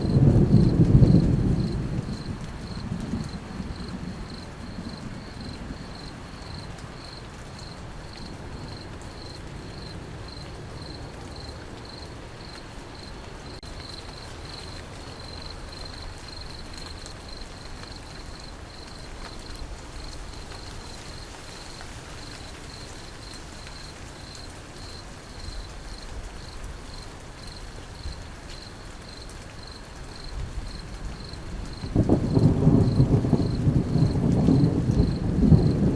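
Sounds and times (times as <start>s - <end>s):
insect chirping: 0.0s - 16.6s, 17.3s - 35.8s
steady rain: 0.0s - 35.9s.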